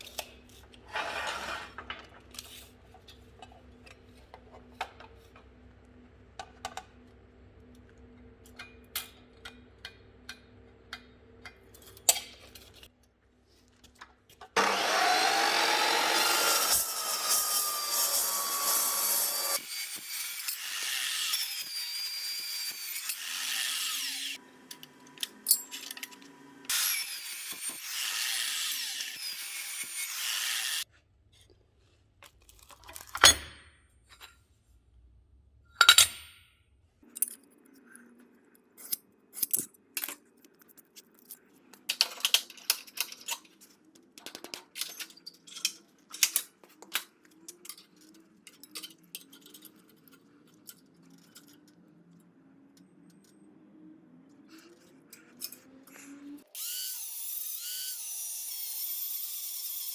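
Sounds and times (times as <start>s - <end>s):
power tool working steel: 14.6s - 30.8s, 54.7s - 59.9s
steel parts clicking and clinking: 35.8s - 36.4s, 37.0s - 38.1s, 38.8s - 52.2s.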